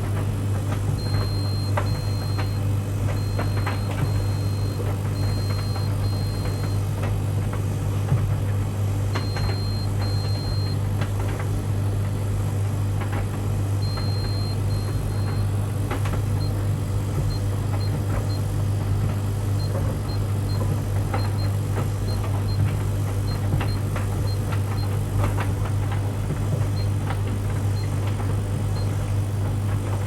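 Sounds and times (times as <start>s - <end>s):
tumble dryer humming: 0.0s - 30.0s
control panel beeps: 1.0s - 6.8s, 9.2s - 10.8s, 13.8s - 15.5s.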